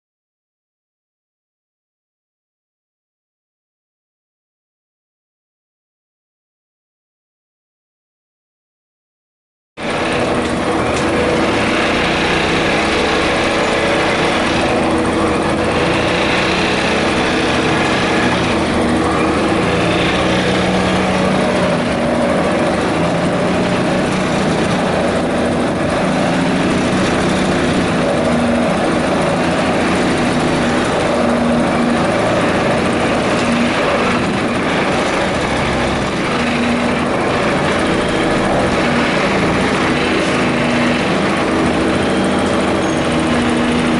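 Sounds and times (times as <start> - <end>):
pile driver mechanical drone: 9.8 - 43.9.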